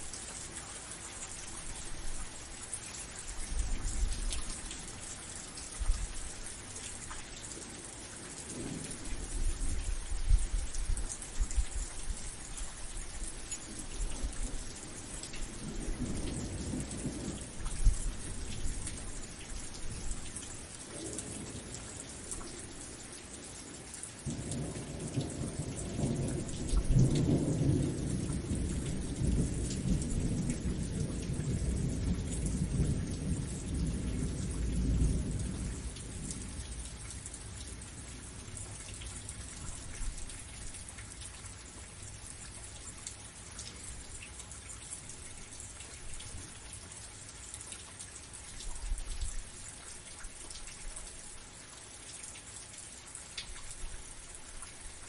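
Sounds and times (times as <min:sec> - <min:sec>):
steady rain falling: 0:00.0 - 0:55.0
low rumble of thunder: 0:03.2 - 0:23.2, 0:24.2 - 0:47.0.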